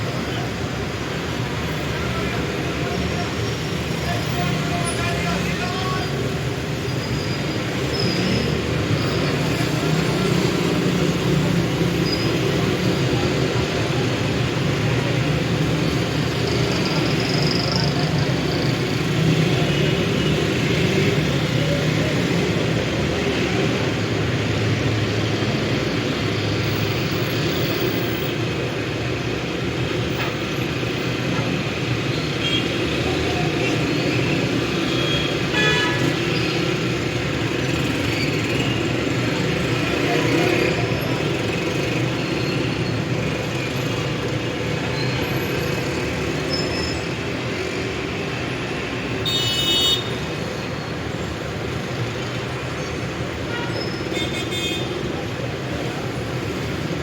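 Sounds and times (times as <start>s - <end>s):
vehicles passing: 0.0s - 57.0s
car horn toot: 35.1s - 36.0s.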